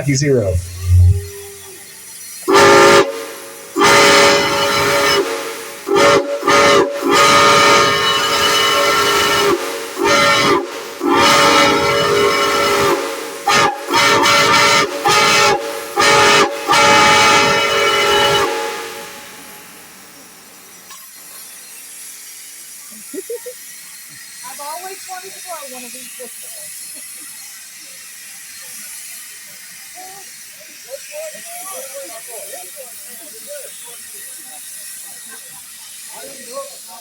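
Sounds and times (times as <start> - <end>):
steam hissing: 0.0 - 37.0
steam whistle blasts: 0.2 - 19.8.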